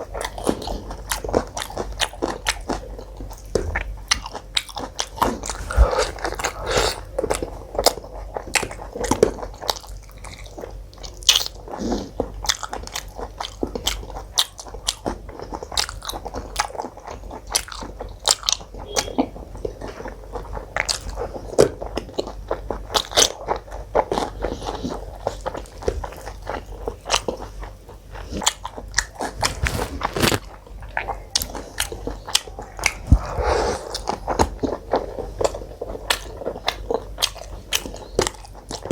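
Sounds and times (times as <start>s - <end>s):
person chewing and biting: 0.0s - 18.6s, 28.2s - 38.9s.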